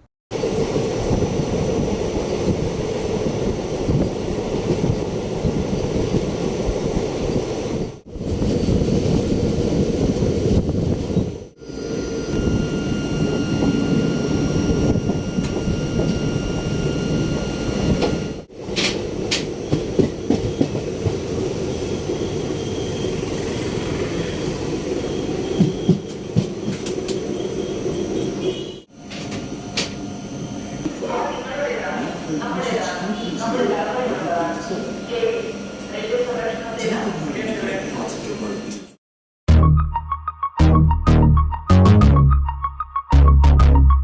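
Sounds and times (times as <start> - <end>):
train rumbling along track: 0.0 - 38.9
train wheel clicks: 18.7 - 21.2.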